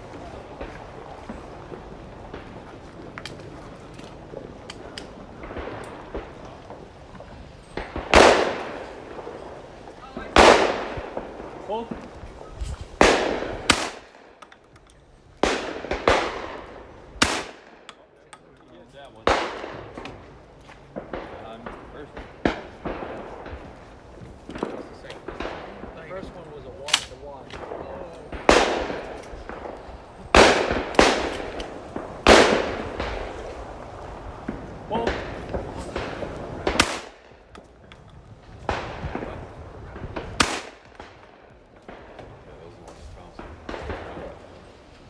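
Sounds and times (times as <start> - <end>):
shotgun shots: 7.7 - 14.6, 15.4 - 18.2, 19.2 - 23.9, 26.8 - 33.8, 34.4 - 37.5, 38.6 - 42.3.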